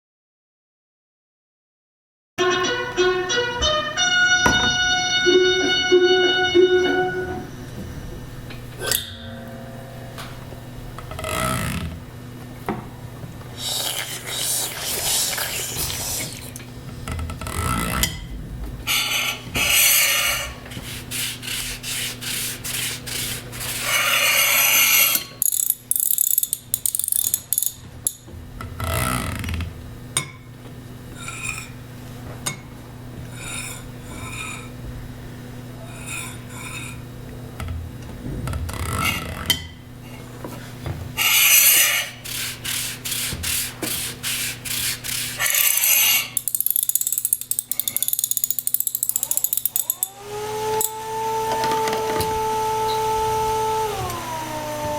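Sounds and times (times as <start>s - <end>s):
scraping and rubbing noise: 17.4s - 25.1s, 41.7s - 46.4s
ratchet-like clicks: 25.4s - 28.2s, 44.7s - 50.2s.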